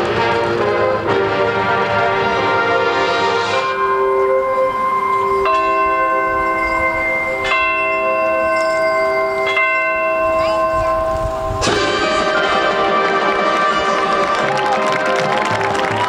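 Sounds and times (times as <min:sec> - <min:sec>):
marching band held chord: 0:00.0 - 0:06.6, 0:11.6 - 0:16.0
bells tolling: 0:03.5 - 0:15.4.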